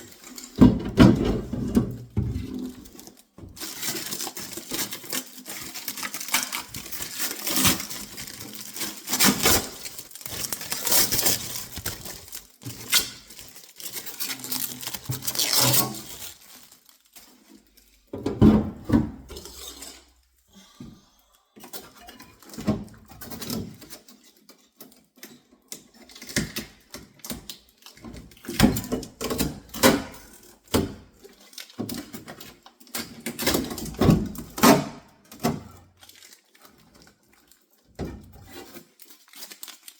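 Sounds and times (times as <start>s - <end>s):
knocks and clatters of hard parts: 0.5s - 2.7s
packing material rustling: 1.9s - 18.1s, 36.0s - 39.9s.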